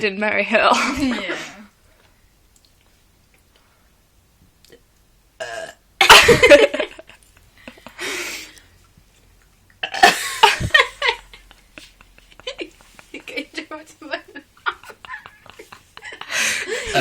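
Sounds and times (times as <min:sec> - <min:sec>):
person burping: 0:05.4 - 0:05.9, 0:09.8 - 0:10.2.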